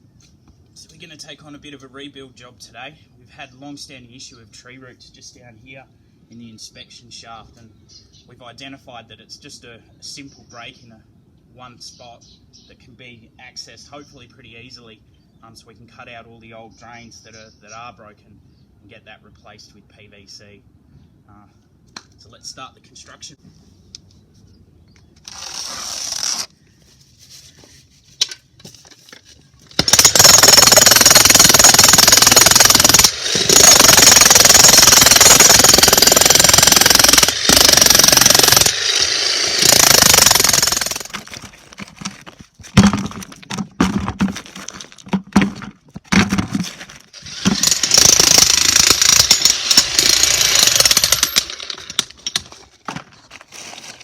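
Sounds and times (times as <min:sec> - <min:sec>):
jackhammer breaking concrete: 0:29.8 - 0:41.4, 0:47.2 - 0:52.3
knocks and clatters: 0:41.1 - 0:47.8.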